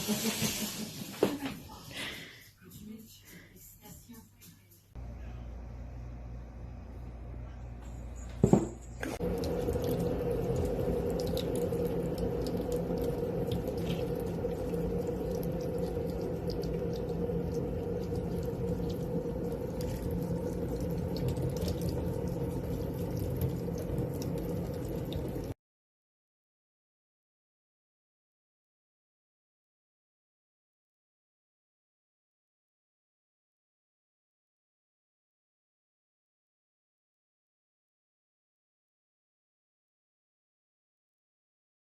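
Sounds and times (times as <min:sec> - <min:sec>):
water running: 0:00.0 - 0:01.8, 0:07.0 - 0:25.6.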